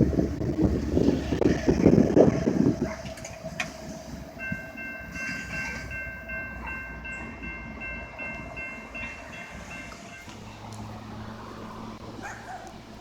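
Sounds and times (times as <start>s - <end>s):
freight train rumbling past: 0.0s - 13.0s
crossing warning bell ringing: 3.1s - 13.0s.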